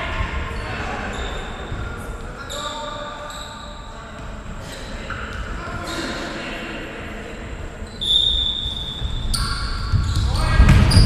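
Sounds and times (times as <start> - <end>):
players' voices echoing: 0.0 - 11.0.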